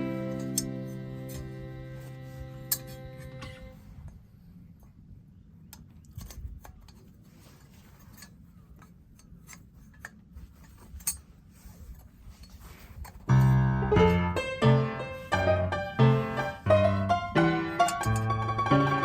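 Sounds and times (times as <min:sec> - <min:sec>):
piano music: 0:00.0 - 0:02.4, 0:13.3 - 0:19.0.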